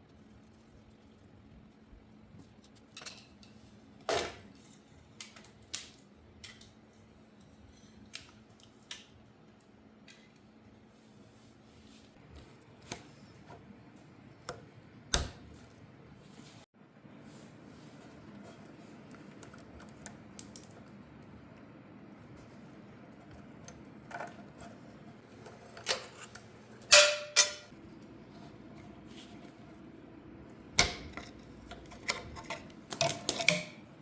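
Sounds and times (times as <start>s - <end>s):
metal parts clinking: 20.1s - 20.8s.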